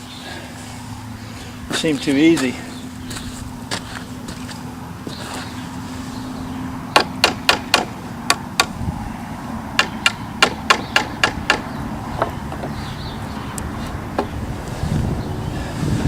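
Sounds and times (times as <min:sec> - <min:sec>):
hammer striking nails in wood: 0:07.0 - 0:08.7, 0:09.8 - 0:12.7.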